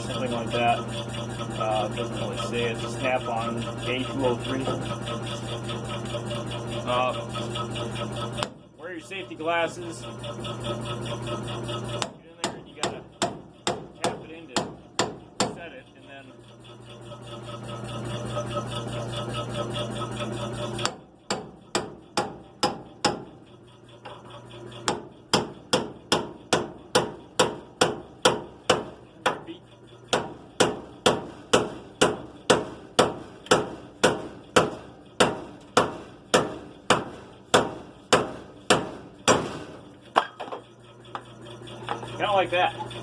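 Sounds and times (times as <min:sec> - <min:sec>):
steady hum: 0:00.0 - 0:43.0
hammer striking metal: 0:12.0 - 0:15.6, 0:20.8 - 0:23.3, 0:24.8 - 0:29.5, 0:30.1 - 0:39.6.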